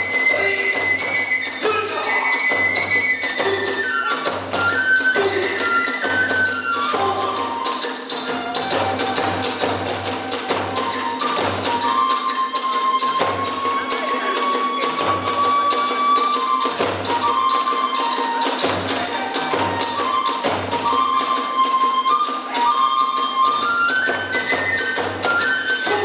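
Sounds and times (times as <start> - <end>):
taiko drum beat: 0.0 - 12.1, 13.2 - 21.4
bamboo flute melody: 0.0 - 26.0
small hand cymbals: 0.0 - 26.0.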